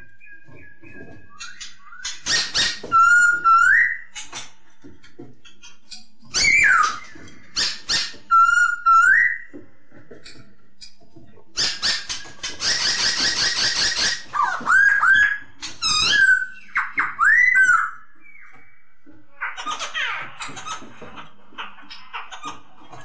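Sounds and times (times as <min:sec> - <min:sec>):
bird whistled calls: 0:00.0 - 0:04.1, 0:06.4 - 0:09.5, 0:12.6 - 0:18.8.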